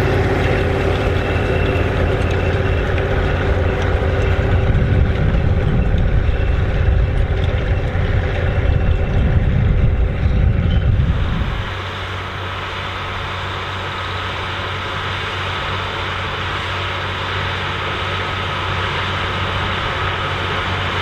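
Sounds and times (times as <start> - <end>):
tractor diesel engine rumbling: 0.0 - 21.0.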